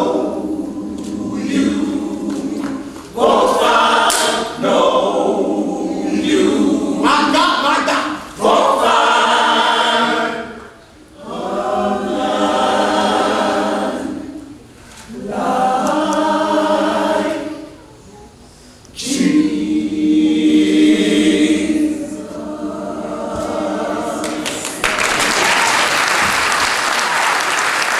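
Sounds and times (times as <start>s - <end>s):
choir singing: 0.0s - 17.9s, 19.0s - 25.0s
applause: 24.2s - 27.9s.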